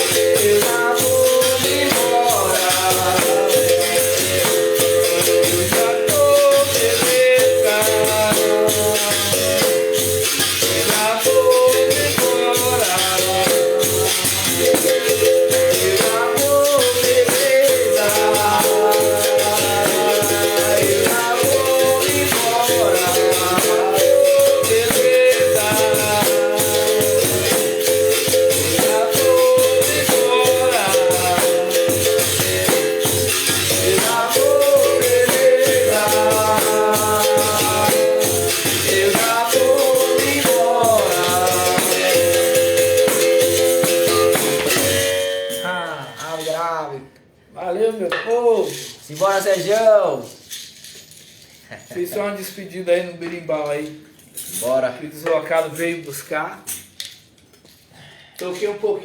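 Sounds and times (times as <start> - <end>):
basket rattle shaking: 0.0 - 45.2, 48.6 - 51.9
berimbau playing: 0.0 - 47.2.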